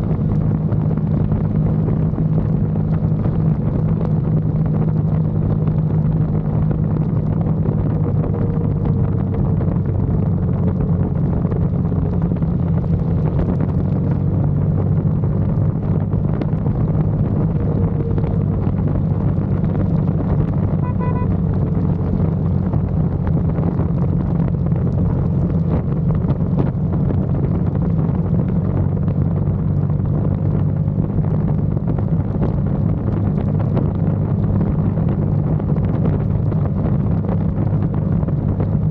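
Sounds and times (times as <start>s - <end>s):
motorcycle engine droning: 0.0s - 38.9s.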